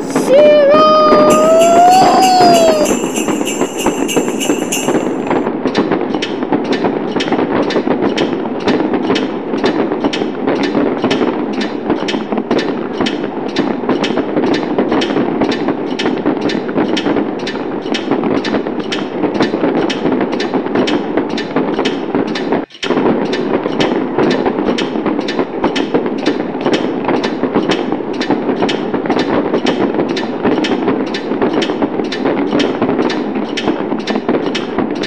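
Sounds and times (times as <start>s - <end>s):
fireworks crackle and rumble: 0.0s - 35.0s
firework pops: 5.7s - 35.0s.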